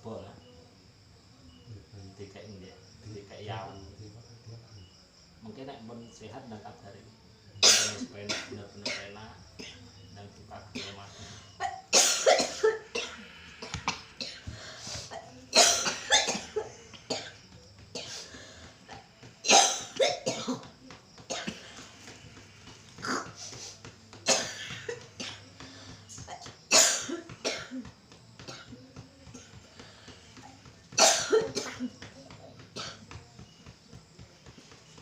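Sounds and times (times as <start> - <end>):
woman clearing throat: 7.6 - 9.0, 11.6 - 18.3, 18.9 - 20.7, 21.3 - 21.9, 23.0 - 23.6, 24.2 - 25.6, 26.2 - 29.5, 30.4 - 33.1
woman coughing hard: 7.6 - 9.9, 11.6 - 18.3, 18.9 - 20.7, 21.3 - 21.9, 23.0 - 23.6, 24.2 - 25.6, 26.2 - 29.5, 30.9 - 33.1.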